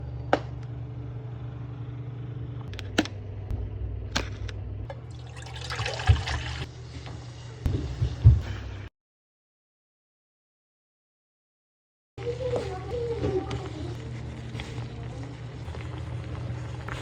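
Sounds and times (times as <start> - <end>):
steady low hum: 0.0 - 8.9, 12.2 - 17.0
water pouring: 4.9 - 6.7.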